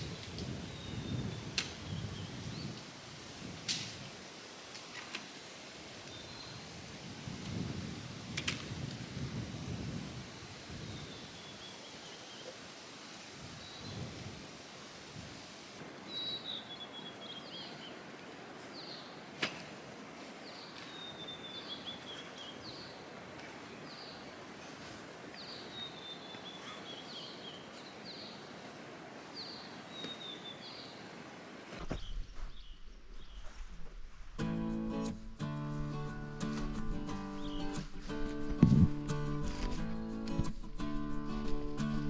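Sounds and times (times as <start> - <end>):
songbird singing: 0.0 - 2.9, 6.0 - 6.7, 10.3 - 12.6, 13.6 - 14.2, 15.9 - 19.3, 20.4 - 33.5, 37.3 - 38.9
steady background hiss: 0.0 - 42.0.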